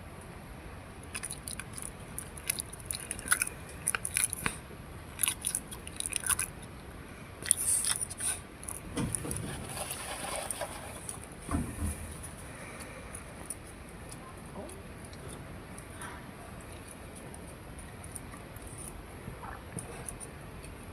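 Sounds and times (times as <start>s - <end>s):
dog making wet mouth clicks: 1.1s - 4.6s.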